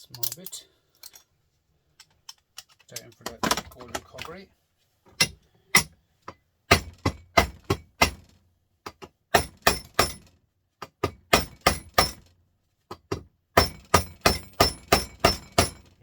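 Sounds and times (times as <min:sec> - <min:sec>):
hammer striking steel casing: 0:13.6 - 0:15.9.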